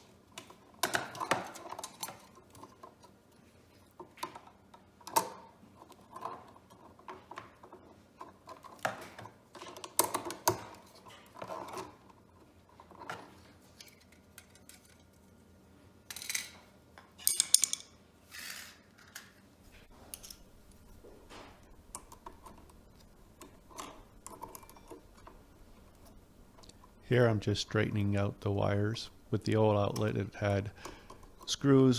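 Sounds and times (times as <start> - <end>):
hand tools clicking on metal: 19.7 - 31.9
scraping rasps: 19.7 - 31.9.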